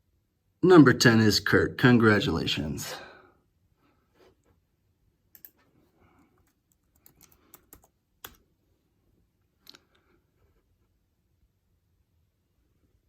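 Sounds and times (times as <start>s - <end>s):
keyboard typing: 5.3s - 5.6s, 6.4s - 8.4s.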